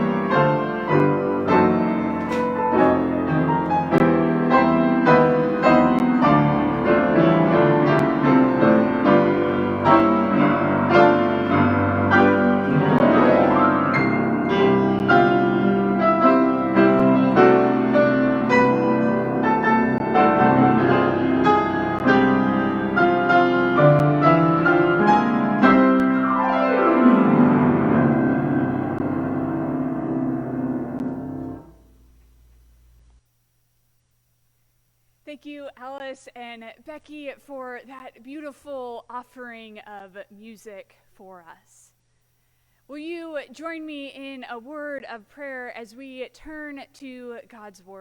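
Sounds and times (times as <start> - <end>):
piano music: 0.0 - 32.1.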